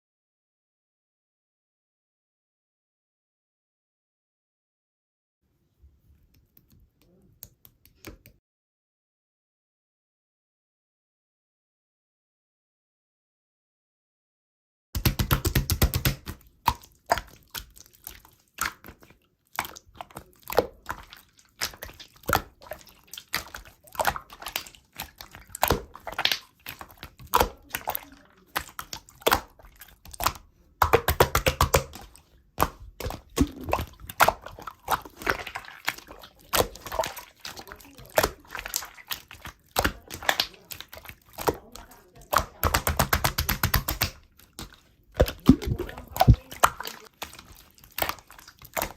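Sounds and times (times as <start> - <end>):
slime squished by hand: 15.0 - 48.9.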